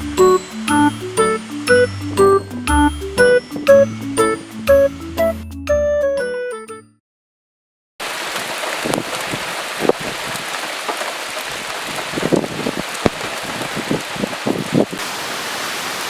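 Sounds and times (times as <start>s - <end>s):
heavy rain falling: 0.0s - 2.7s, 8.0s - 16.0s
close raindrops striking: 8.0s - 16.0s.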